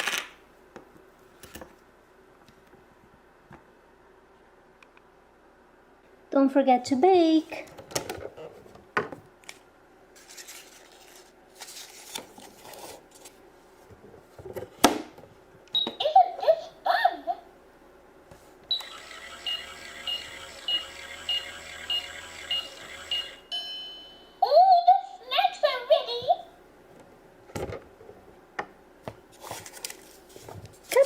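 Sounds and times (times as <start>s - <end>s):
repeating electronic beep: 18.7s - 23.5s
electronic baking tune: 18.7s - 24.3s
toy oven chimes and bleeps: 18.7s - 24.4s.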